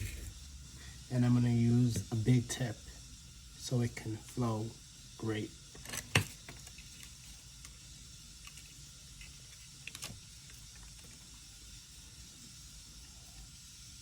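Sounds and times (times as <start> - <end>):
steady low hiss: 0.0 - 14.0.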